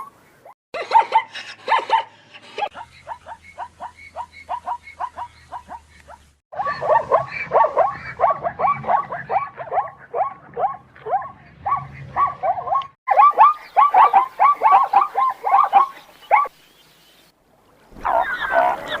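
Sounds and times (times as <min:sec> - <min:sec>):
zebra barking: 0:02.8 - 0:16.5, 0:18.0 - 0:19.0.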